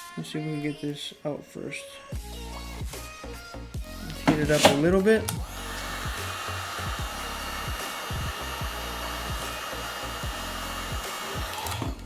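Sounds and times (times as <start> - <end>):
soft background music: 0.0 - 12.0
hot-air tool blowing: 4.2 - 12.0.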